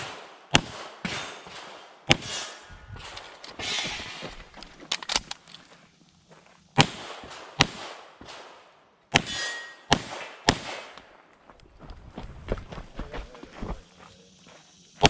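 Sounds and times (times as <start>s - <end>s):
pistol shots: 0.0s - 4.1s, 6.8s - 11.0s.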